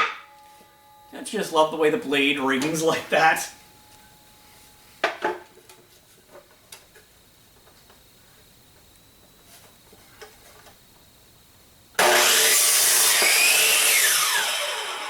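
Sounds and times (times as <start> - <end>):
miter saw cutting wood: 12.0 - 15.0.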